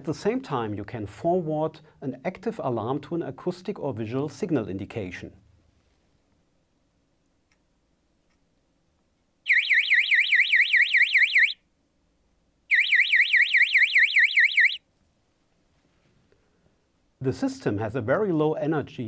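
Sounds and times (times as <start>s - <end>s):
electronic alarm warble: 9.5s - 11.6s, 12.7s - 14.8s.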